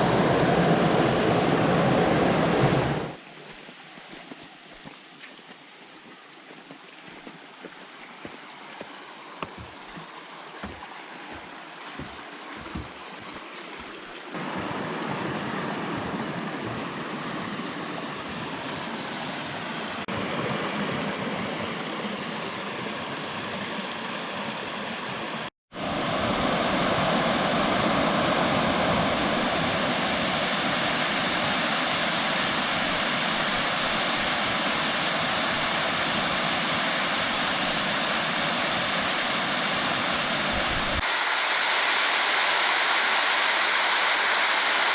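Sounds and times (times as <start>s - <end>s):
waterfall rushing: 0.0s - 3.2s, 25.4s - 44.9s
stream water rushing: 0.0s - 44.9s
creek trickling: 3.2s - 14.4s
water drips and plinks: 6.4s - 14.4s.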